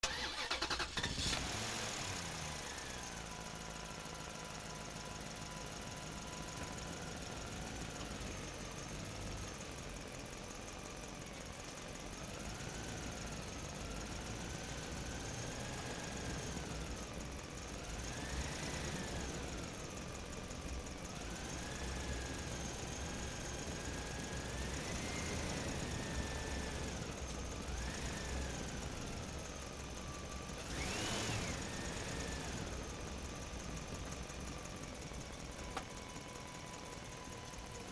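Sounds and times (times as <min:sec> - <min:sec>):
toy truck electric motor whining: 0:00.0 - 0:01.5.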